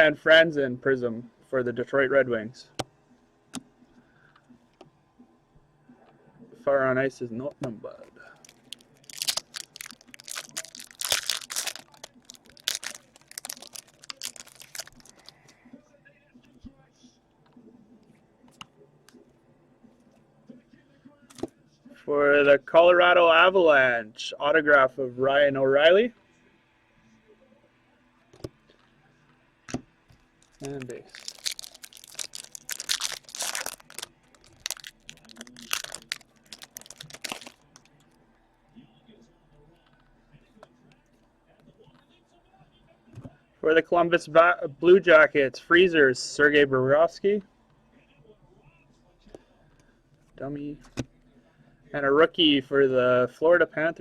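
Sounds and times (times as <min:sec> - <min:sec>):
foil wrappers crinkling and tearing: 0:08.3 - 0:15.4, 0:30.4 - 0:38.0.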